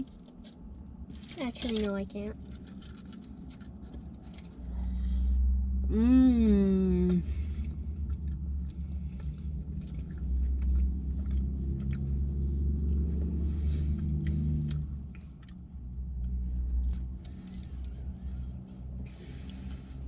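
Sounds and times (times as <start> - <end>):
low hum: 0.0 - 20.0
low rumble: 0.0 - 20.0
chewing crunchy candy: 7.9 - 13.1, 14.0 - 15.7.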